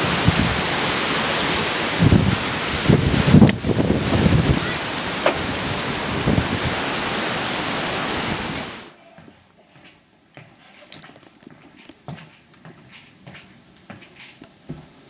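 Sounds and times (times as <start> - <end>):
wind gusting over microphone: 0.0 - 8.9.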